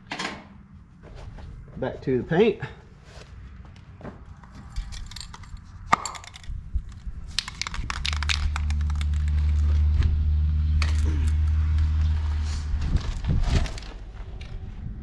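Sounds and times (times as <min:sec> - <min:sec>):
handling clicks and rattles: 0:04.5 - 0:09.8.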